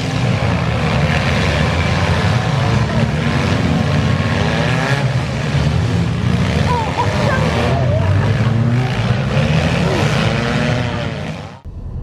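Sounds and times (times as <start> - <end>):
engine and road drone: 0.0 - 12.0.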